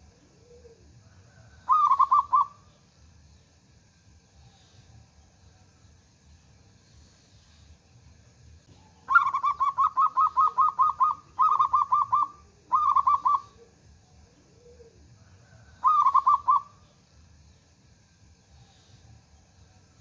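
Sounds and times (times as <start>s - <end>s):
dove cooing: 0.0s - 2.7s, 8.7s - 16.8s.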